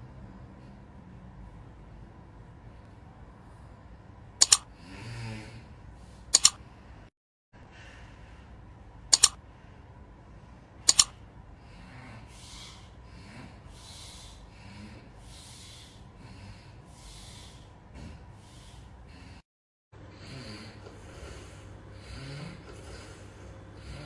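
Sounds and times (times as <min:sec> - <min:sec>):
sharp double clicks: 0:04.4 - 0:04.7, 0:06.3 - 0:06.6, 0:09.1 - 0:09.4, 0:10.9 - 0:11.2
person breathing noisily in sleep: 0:11.6 - 0:19.5, 0:20.1 - 0:24.0.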